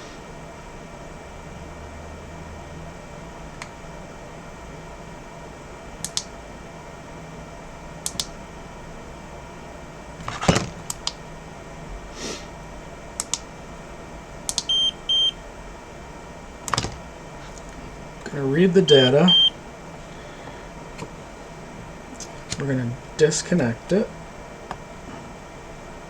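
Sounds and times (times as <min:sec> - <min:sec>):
short electronic beeps: 0:18.9 - 0:19.6.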